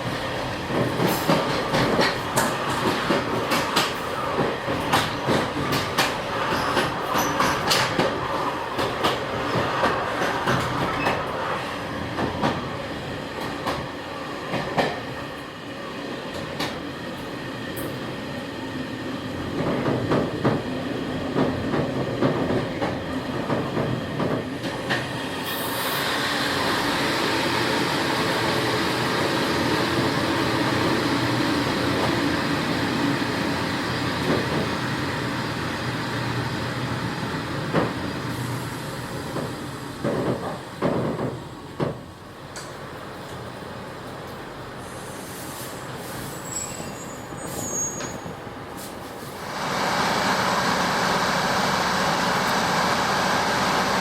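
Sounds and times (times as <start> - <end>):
steady train rush: 0.0 - 54.0
train wheels clacking over rail joints: 0.7 - 11.2, 39.3 - 42.7.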